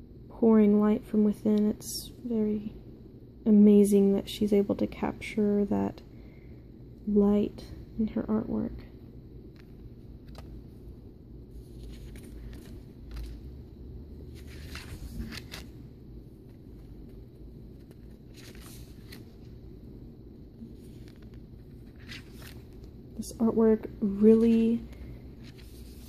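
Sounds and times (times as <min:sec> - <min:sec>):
low background hum: 0:00.0 - 0:26.0
cards rustling and clicking: 0:09.5 - 0:10.6, 0:11.6 - 0:13.6, 0:14.2 - 0:15.8, 0:16.4 - 0:19.6, 0:20.6 - 0:23.0, 0:24.4 - 0:26.0.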